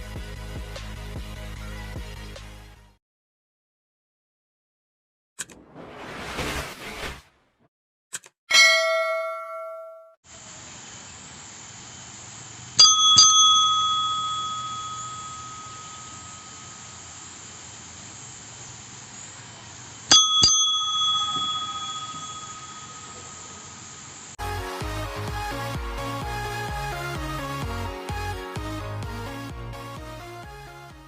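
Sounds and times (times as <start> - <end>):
music: 0.0 - 3.0, 24.4 - 31.0
counter service bell ding: 8.5 - 10.2, 12.8 - 16.9, 20.1 - 23.8
steady hiss: 10.3 - 24.4.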